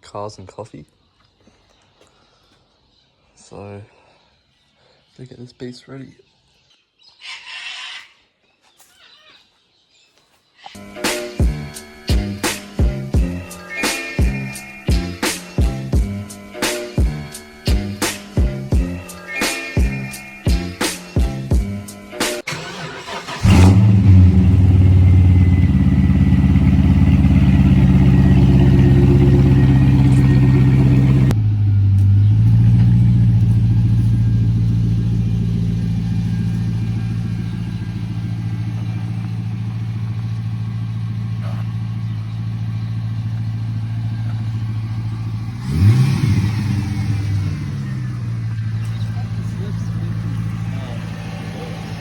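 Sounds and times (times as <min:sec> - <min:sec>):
music: 0:10.8 - 0:23.2
car engine starting and idling: 0:22.4 - 0:52.0.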